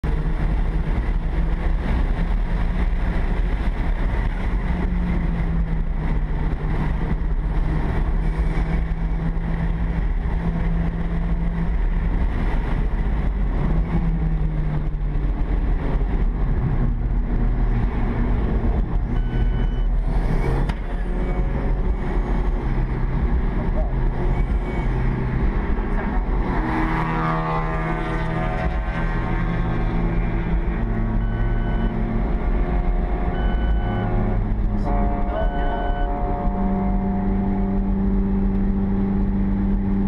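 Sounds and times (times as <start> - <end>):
car engine rumbling: 0.0 - 40.0
short electronic beep: 19.1 - 20.6, 31.1 - 32.2, 33.3 - 34.4, 35.3 - 36.2.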